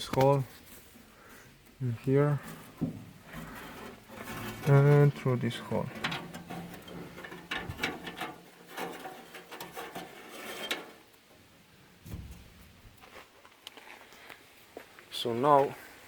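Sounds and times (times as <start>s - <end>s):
twine rubbing on metal box: 2.4s - 11.0s
dull thump: 2.7s - 3.6s, 12.0s - 13.0s.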